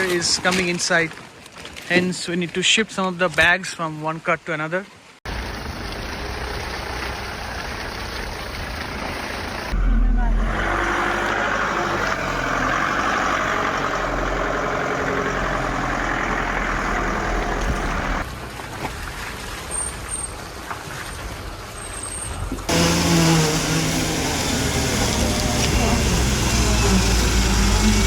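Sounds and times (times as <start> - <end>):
truck engine hum: 9.6 - 18.6, 22.7 - 28.0.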